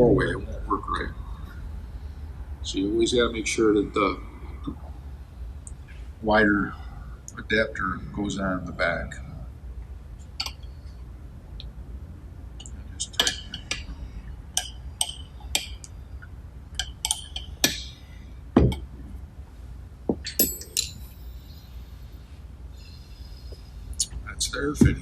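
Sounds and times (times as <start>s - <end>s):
metal parts and tools clinking: 20.4s - 21.6s.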